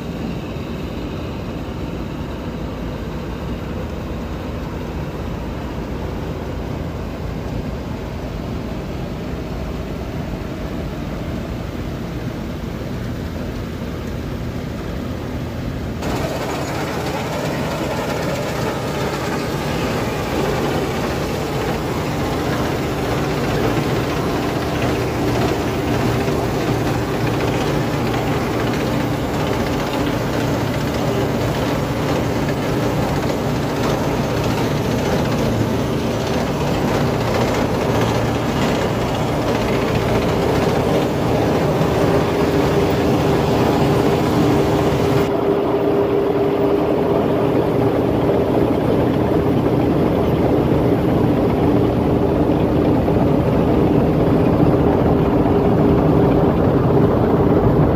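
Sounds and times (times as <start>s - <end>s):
combine harvester droning: 15.8s - 57.9s.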